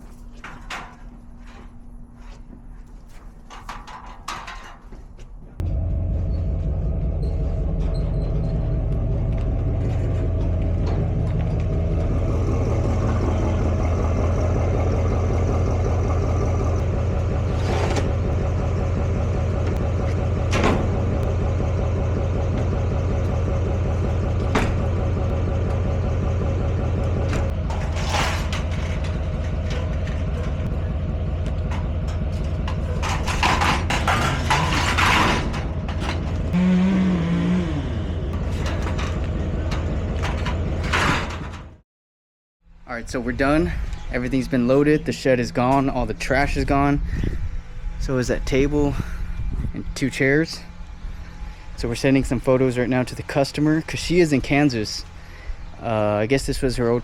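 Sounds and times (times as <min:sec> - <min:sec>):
motor running steadily: 0:05.6 - 0:33.5, 0:35.7 - 0:40.8.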